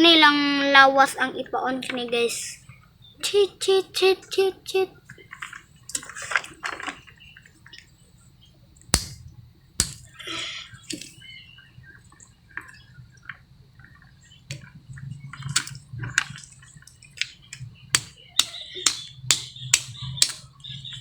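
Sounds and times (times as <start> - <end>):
shells cracking: 9.0 - 10.2, 17.2 - 20.5
wet squishing: 9.0 - 10.2, 15.3 - 20.5.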